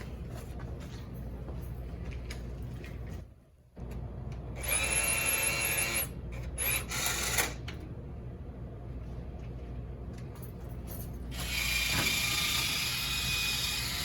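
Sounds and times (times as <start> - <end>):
cordless drill whirring: 4.6 - 7.6, 11.3 - 14.0.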